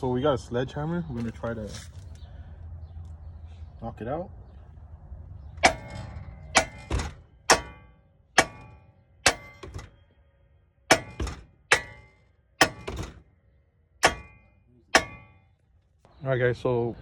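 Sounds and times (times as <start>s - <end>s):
sledgehammer striking metal: 5.6s - 10.0s, 10.9s - 13.3s, 14.0s - 15.6s.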